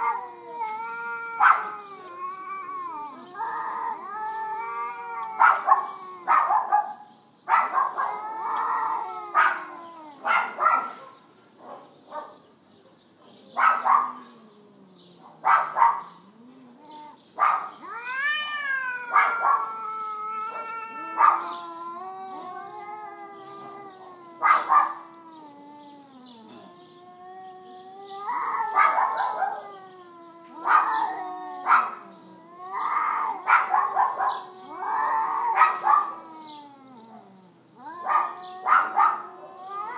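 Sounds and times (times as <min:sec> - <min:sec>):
cats growling: 0:00.0 - 0:07.0, 0:07.6 - 0:11.0, 0:13.4 - 0:39.9
cats yowling: 0:00.0 - 0:11.1, 0:13.6 - 0:39.9
cats hissing and spitting: 0:08.1 - 0:10.6, 0:16.3 - 0:33.5, 0:34.2 - 0:38.6.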